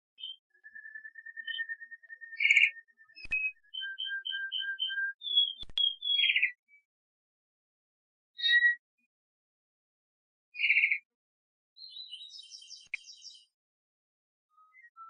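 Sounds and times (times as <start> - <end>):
canary singing: 0.2 - 6.6.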